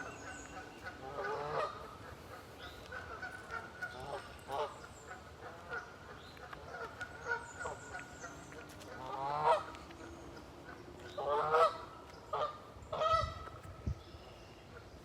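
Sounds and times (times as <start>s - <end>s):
geese honking: 0.0s - 9.9s, 10.6s - 13.6s.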